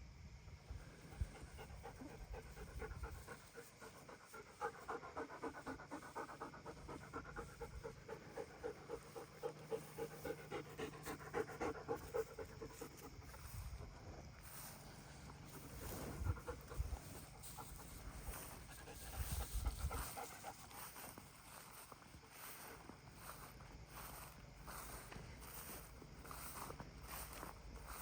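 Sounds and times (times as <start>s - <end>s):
dog panting: 1.0s - 14.7s, 15.3s - 22.0s.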